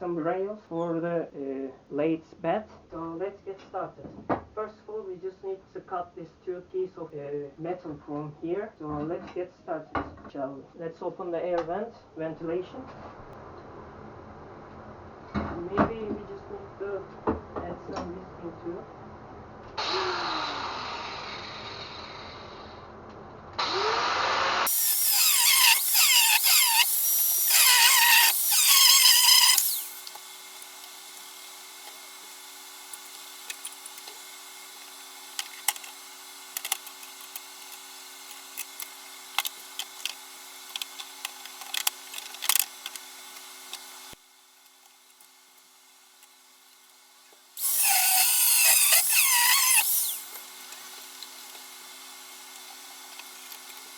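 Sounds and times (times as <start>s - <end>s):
power tool cutting steel: 23.6s - 53.9s
clicks: 24.7s - 32.1s, 32.9s - 34.2s, 34.8s - 43.9s.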